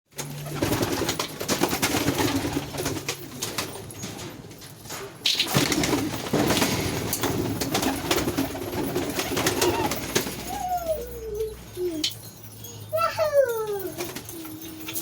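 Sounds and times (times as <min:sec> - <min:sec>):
pigeons cooing: 0:07.6 - 0:15.0.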